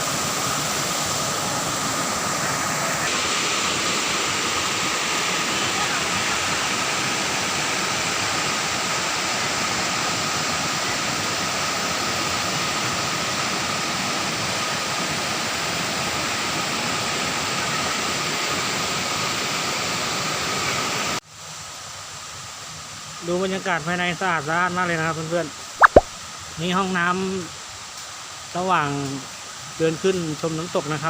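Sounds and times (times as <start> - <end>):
waterfall roaring: 0.0 - 8.4.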